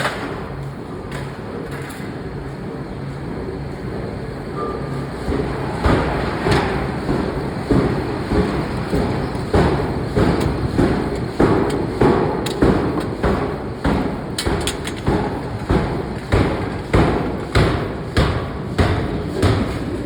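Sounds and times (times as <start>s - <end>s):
hammer striking hot steel: 7.8s - 19.8s.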